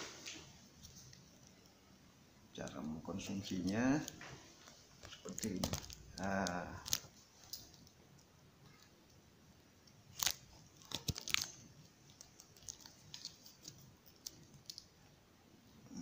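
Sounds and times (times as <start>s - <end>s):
clicks and knocks of small objects: 2.6s - 8.0s, 10.1s - 14.9s.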